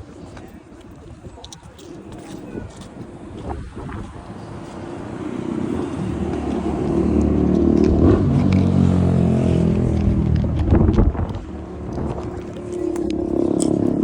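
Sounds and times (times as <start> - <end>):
bus engine running: 3.6 - 14.0.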